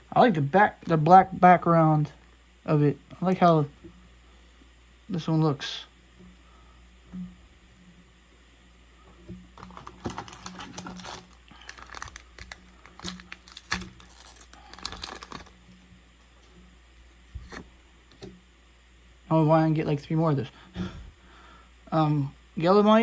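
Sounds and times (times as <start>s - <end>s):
foil wrapper crinkling and tearing: 9.6s - 15.7s.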